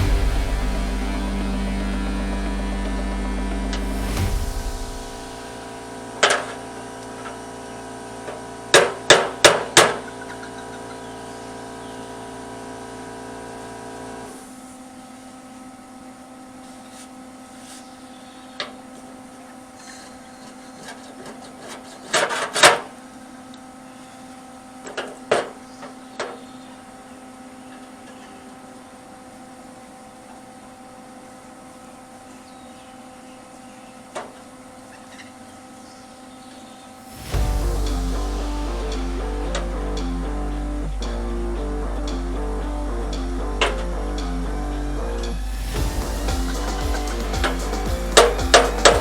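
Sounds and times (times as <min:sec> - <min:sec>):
hammer blows: 0:00.0 - 0:07.7, 0:37.0 - 0:41.3, 0:45.2 - 0:49.0
steady hum: 0:00.0 - 0:21.8, 0:22.6 - 0:49.0.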